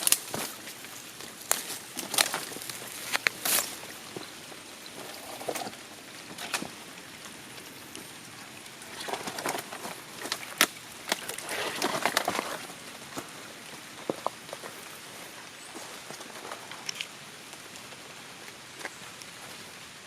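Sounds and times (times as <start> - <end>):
footsteps crunching: 0.0 - 4.4, 9.5 - 16.9
light rain on leaves: 0.0 - 20.0.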